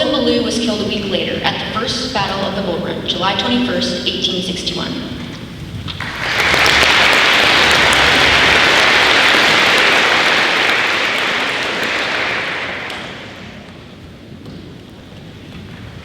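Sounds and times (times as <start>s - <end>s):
audience applauding: 5.9s - 13.9s.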